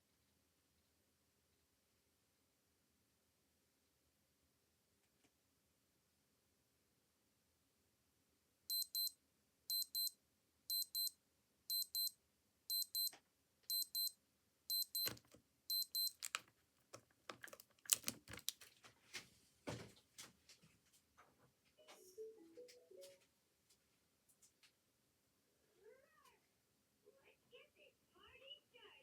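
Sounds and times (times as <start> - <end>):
watch alarm double beeps: 8.7 - 11.1, 11.7 - 13.1, 13.7 - 16.3.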